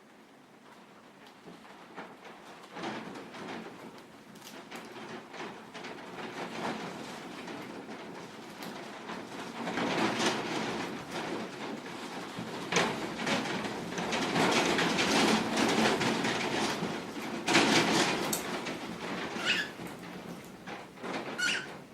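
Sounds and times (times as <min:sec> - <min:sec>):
wind and rain: 0:00.0 - 0:21.9
storm shutters rattling: 0:02.4 - 0:21.9
cockatiel call: 0:19.4 - 0:19.8, 0:21.4 - 0:21.7.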